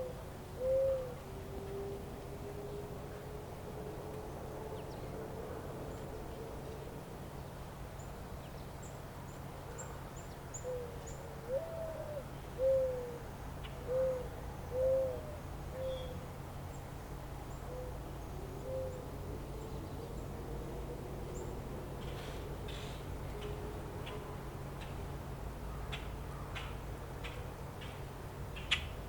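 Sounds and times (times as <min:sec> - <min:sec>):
bird hooting: 0:00.0 - 0:02.0, 0:10.6 - 0:16.2, 0:17.7 - 0:18.0, 0:18.6 - 0:19.1.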